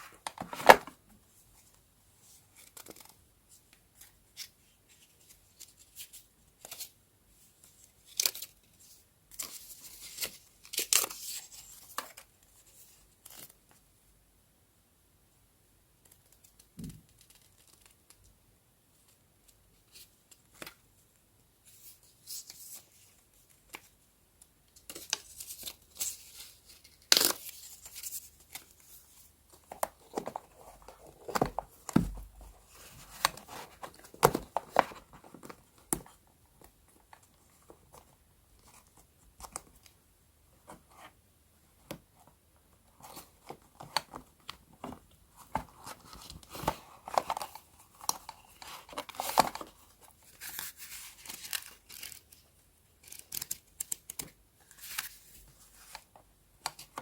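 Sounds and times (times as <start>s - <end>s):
paper rustling and crinkling: 0.0s - 1.0s, 44.8s - 52.4s, 53.0s - 56.1s.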